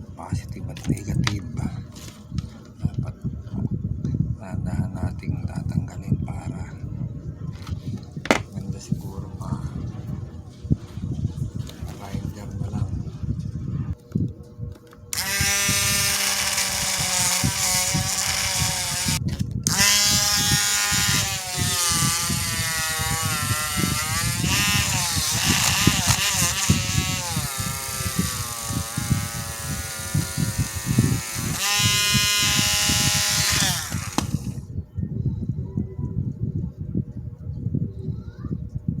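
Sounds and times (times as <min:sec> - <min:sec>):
electric grinder whining: 0:15.1 - 0:34.6.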